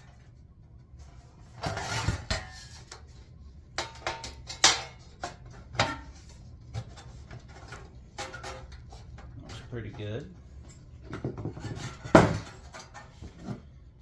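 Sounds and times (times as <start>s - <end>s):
metal scraping on metal: 1.4s - 3.2s.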